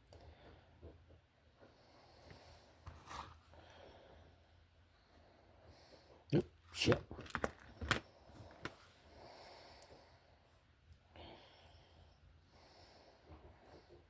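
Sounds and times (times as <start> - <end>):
soft breathing: 0.1 - 6.3, 8.0 - 14.0.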